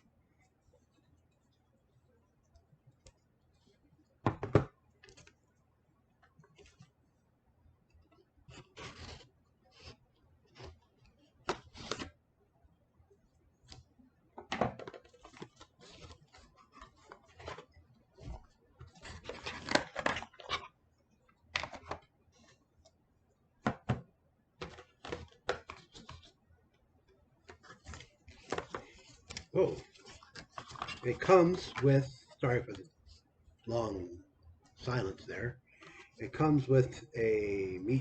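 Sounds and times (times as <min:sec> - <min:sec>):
paper packaging rustling: 0:14.5 - 0:20.7, 0:27.5 - 0:32.8.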